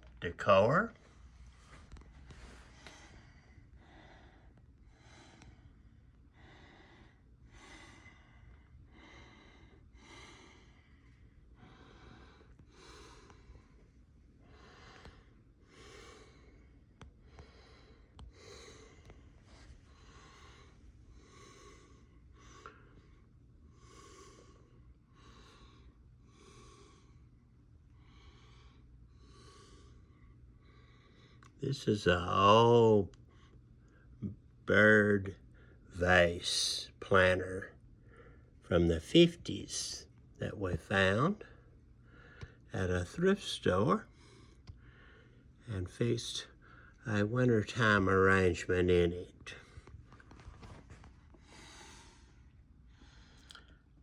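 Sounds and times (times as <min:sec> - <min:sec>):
low room hum: 0:00.0 - 0:54.0
faint breathing: 0:00.9 - 0:36.0, 0:36.6 - 0:38.7, 0:39.4 - 0:45.7, 0:46.3 - 0:47.1, 0:49.2 - 0:54.0.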